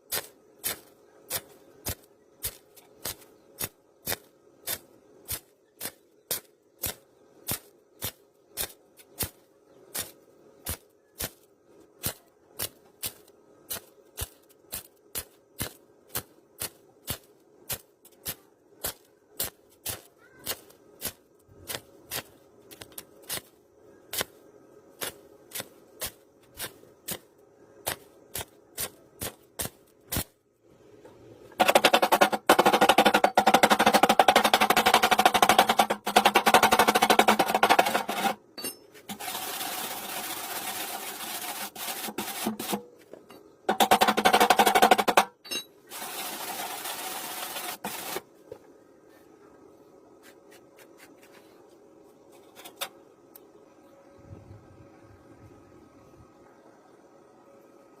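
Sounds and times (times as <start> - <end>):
crackling welding arc with hum: 0.0 - 30.4, 39.0 - 42.8, 45.9 - 48.3.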